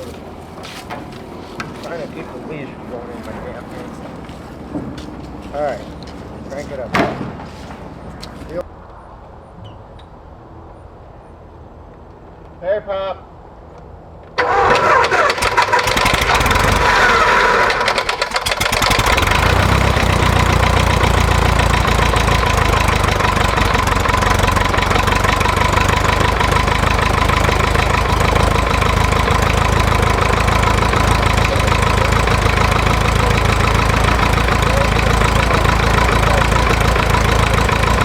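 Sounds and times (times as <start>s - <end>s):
propeller plane engine idling: 0.0s - 4.8s, 14.4s - 38.0s.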